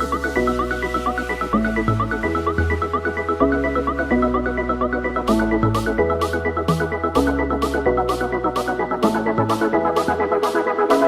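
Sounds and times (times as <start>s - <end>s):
electronic music with steady beat: 0.0s - 11.0s.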